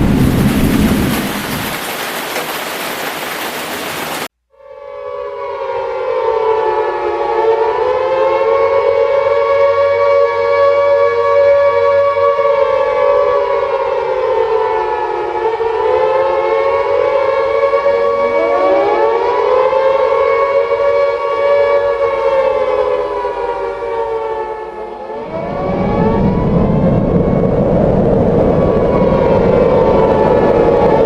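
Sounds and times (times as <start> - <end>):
sirens wailing: 4.6 - 31.0
siren winding up: 17.5 - 20.6.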